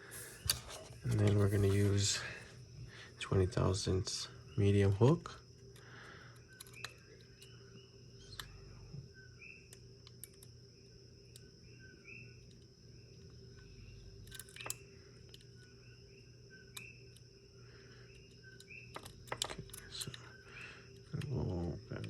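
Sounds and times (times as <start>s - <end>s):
electrical hum: 0.0s - 22.0s
lock picking clicks and scrapes: 0.2s - 1.9s, 5.6s - 7.6s, 13.9s - 15.7s, 18.1s - 22.0s.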